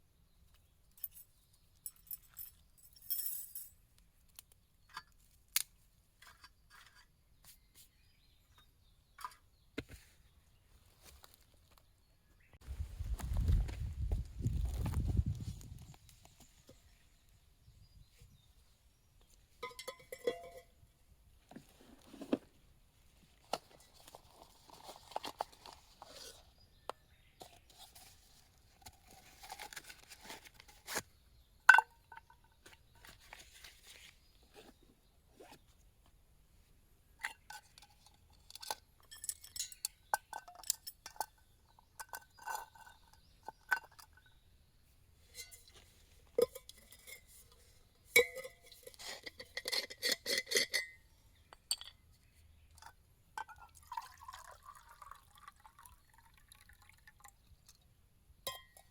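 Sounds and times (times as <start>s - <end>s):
metal cookware clinking: 19.6s - 20.7s, 38.6s - 41.3s, 48.2s - 51.9s.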